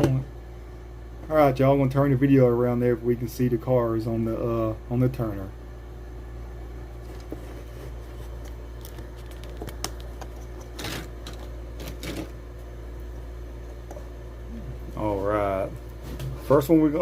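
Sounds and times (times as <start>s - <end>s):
handling clicks and rustles: 7.0s - 12.4s.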